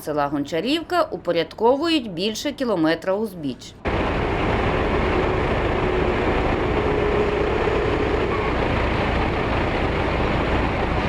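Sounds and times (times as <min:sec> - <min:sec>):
engine running steadily: 0:03.8 - 0:11.0.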